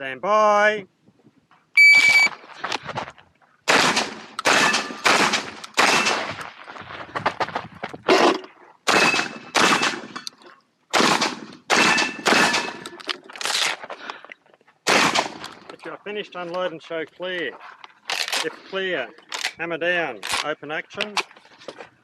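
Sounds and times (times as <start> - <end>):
shotgun shots: 3.7 - 6.4, 8.9 - 10.2, 10.9 - 12.9, 14.9 - 15.5.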